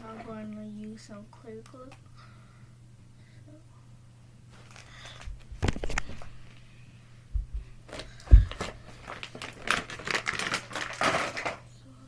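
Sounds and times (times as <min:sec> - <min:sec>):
dull thumps: 0:07.3 - 0:08.9.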